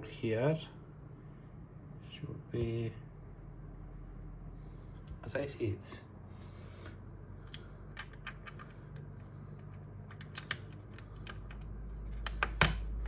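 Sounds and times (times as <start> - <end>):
small clicks and taps of parts: 6.8 - 12.9.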